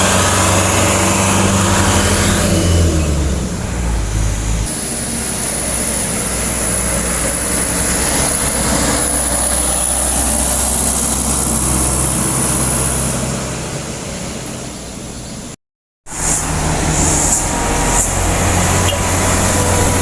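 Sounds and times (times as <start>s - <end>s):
truck engine under load: 0.0s - 20.0s.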